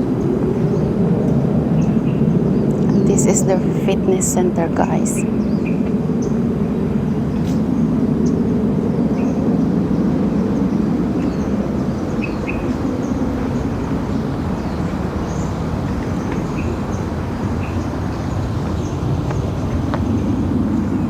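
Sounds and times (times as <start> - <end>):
low outdoor rumble: 0.0 - 15.2.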